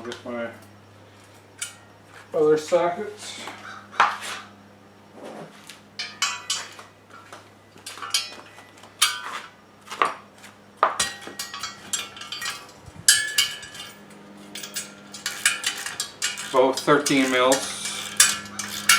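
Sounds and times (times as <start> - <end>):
steel sockets clinking: 6.0 - 6.8, 7.8 - 9.5, 11.0 - 18.9.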